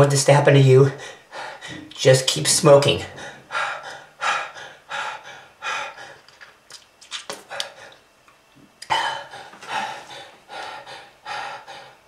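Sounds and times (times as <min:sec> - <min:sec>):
person breathing heavily: 0:00.9 - 0:01.9, 0:03.0 - 0:06.4, 0:07.4 - 0:08.0, 0:08.8 - 0:12.0.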